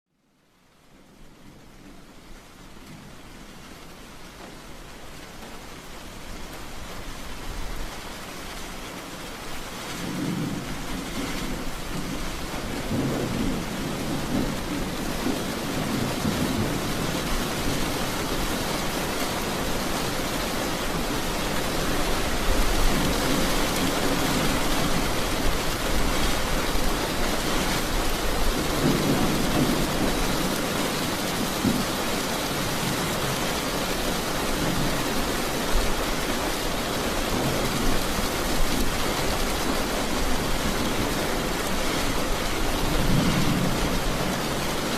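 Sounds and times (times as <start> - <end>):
rain hissing: 0.7 - 44.9
thunder rumbling: 10.0 - 19.0, 22.3 - 33.4, 42.7 - 44.9.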